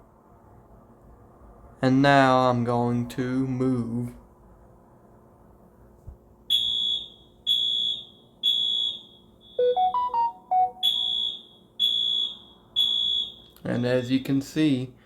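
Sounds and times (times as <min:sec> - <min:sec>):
loud high-pitched alarm beeps: 0:06.5 - 0:13.5.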